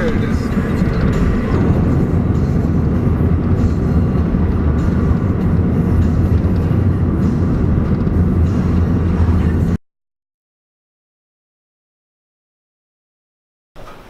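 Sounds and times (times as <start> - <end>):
car engine low rumble: 0.0 - 9.8.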